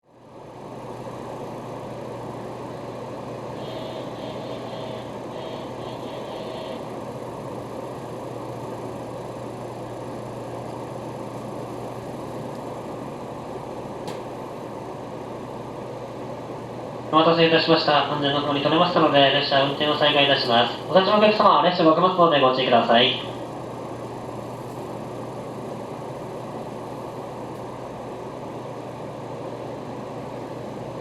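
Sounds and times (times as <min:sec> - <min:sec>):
train car hum and rush: 0:00.0 - 0:31.0.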